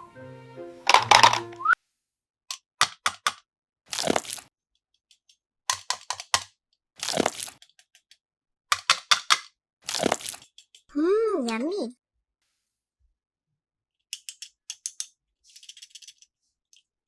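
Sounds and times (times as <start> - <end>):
plastic toy parts clicking: 0.9 - 1.5, 2.5 - 3.4, 5.0 - 6.6, 7.5 - 9.5, 10.4 - 10.9, 14.0 - 16.9.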